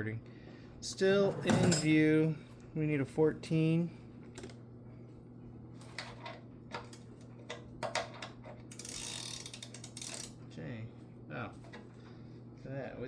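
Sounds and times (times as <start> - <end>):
steady low hum: 0.0 - 13.0
ratchet rasping: 8.7 - 10.4
wrench clicking on metal: 8.7 - 10.4.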